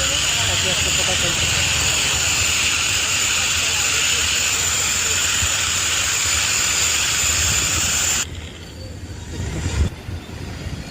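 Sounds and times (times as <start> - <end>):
loud hissing with high whine: 0.0 - 8.3.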